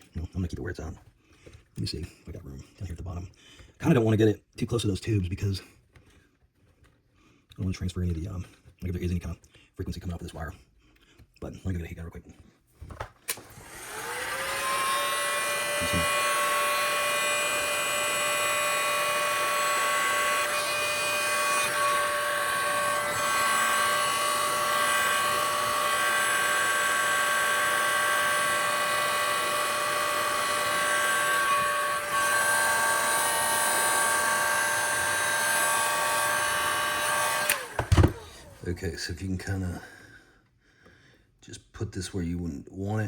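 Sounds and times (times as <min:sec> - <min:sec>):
heat gun fan whine: 0:13.3 - 0:38.8.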